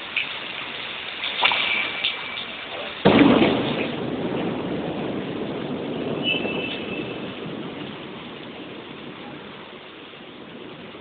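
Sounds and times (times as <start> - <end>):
steady rain: 0.0 - 11.0
thunderclap rumbling: 0.3 - 11.0.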